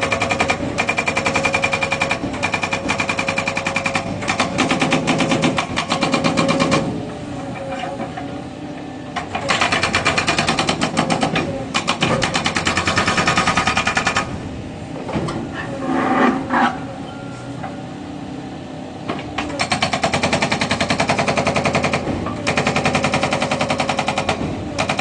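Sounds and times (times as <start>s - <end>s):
hydraulic breaker hammering: 0.0s - 7.0s, 9.1s - 14.4s, 19.1s - 25.0s
diesel engine running: 0.0s - 25.0s.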